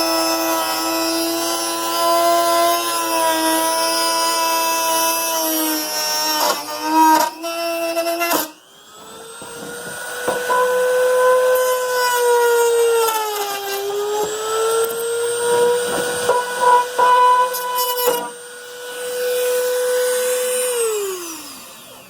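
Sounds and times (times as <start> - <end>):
rotary tool cutting whine: 0.0 - 22.0.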